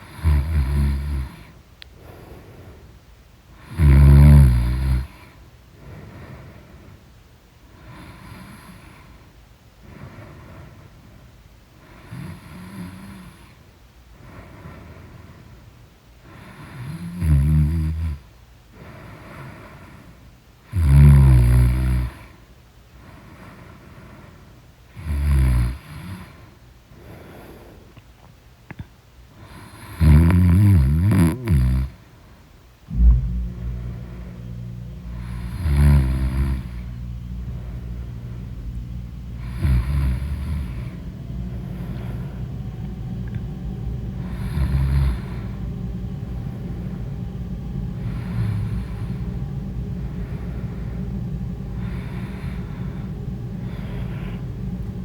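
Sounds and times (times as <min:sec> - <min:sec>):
person snoring loudly: 0:00.0 - 0:01.5, 0:03.6 - 0:05.2, 0:16.4 - 0:18.2, 0:20.7 - 0:22.3, 0:29.7 - 0:32.0, 0:35.0 - 0:38.4, 0:39.4 - 0:41.0, 0:44.2 - 0:45.6, 0:48.0 - 0:49.2
steady low rumble: 0:32.2 - 0:55.0.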